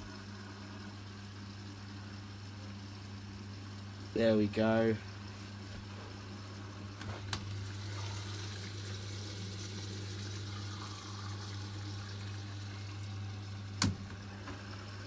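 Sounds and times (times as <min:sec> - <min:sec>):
washing machine filling with water: 0:00.0 - 0:15.0
washing machine clicks: 0:13.8 - 0:14.6.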